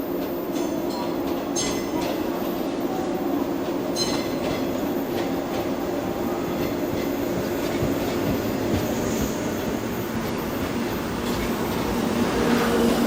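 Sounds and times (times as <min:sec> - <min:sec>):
train rumbling on rails: 0:00.0 - 0:13.0
high wheel squeal: 0:03.9 - 0:04.8.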